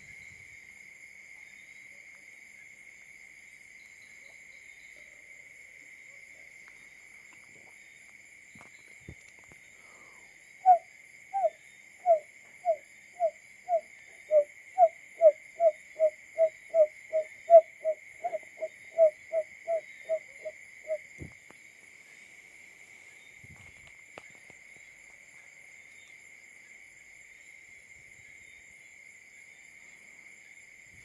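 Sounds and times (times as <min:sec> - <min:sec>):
bird low hooting notes: 0:10.6 - 0:21.1.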